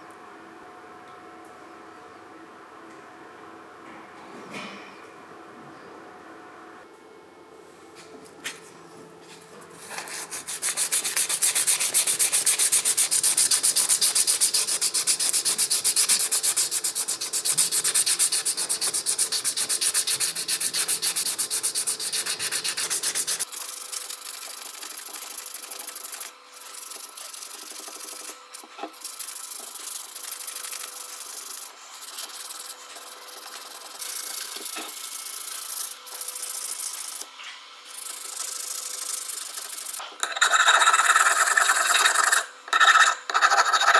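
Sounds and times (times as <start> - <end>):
abrasive rubbing on metal: 9.8 - 23.4.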